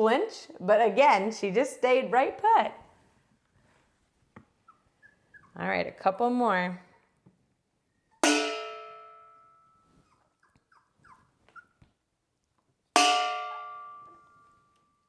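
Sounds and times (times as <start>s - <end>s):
puppy squeaks: 4.6s - 5.6s, 10.0s - 11.9s
metal object clanging: 8.2s - 9.8s, 13.0s - 14.8s.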